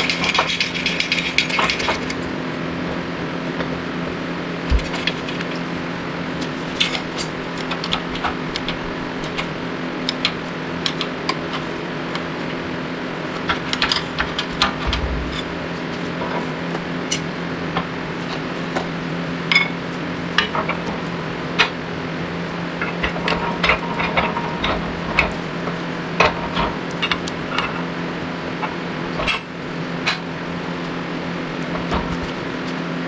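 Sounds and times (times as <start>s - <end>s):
steel tools clicking and clinking: 0.0s - 2.2s
machine hum: 14.1s - 17.0s.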